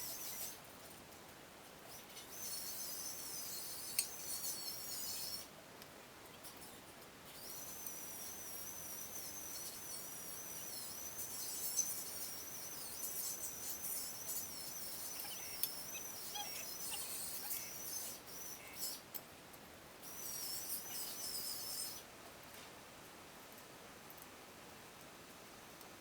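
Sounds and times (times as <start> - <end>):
insects trilling: 7.4 - 19.0, 20.0 - 22.0.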